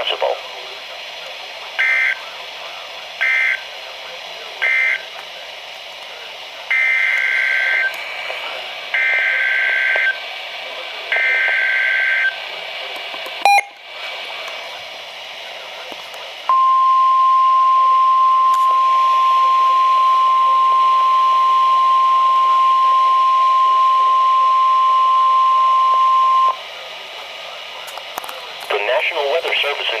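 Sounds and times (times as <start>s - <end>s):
radio hiss: 0.0s - 30.0s
steady alarm tone: 1.8s - 2.2s, 3.2s - 3.6s, 4.6s - 5.1s, 6.7s - 7.9s, 8.9s - 10.3s, 11.1s - 12.4s, 13.4s - 13.8s, 16.5s - 26.6s.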